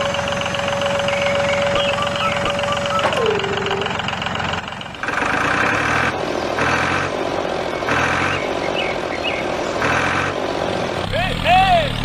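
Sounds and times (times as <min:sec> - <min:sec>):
tractor engine pulsing: 0:00.0 - 0:10.9.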